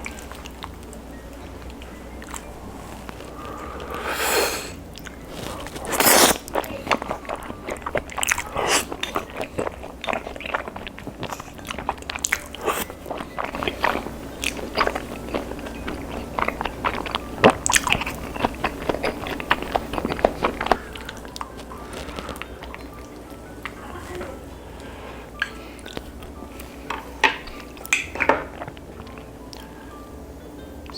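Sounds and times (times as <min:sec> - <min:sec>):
crunching fried chicken: 0:01.7 - 0:23.8.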